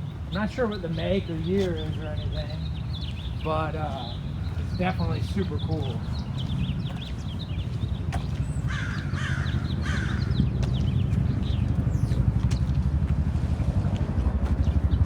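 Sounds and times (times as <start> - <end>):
small birds chirping: 0.0 - 12.9
crow cawing: 8.7 - 10.4.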